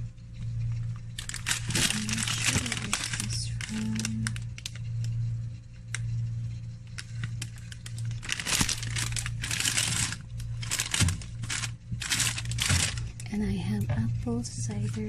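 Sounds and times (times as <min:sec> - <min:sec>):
steady low hum: 0:00.0 - 0:15.0
plastic packaging crinkling: 0:01.1 - 0:05.1, 0:07.0 - 0:13.3.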